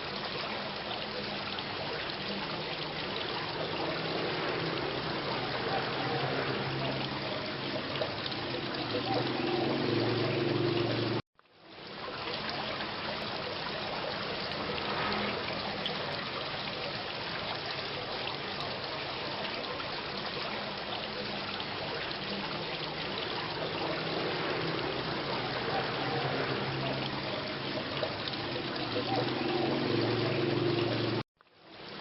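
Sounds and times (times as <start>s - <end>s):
steady rain: 0.0s - 32.0s.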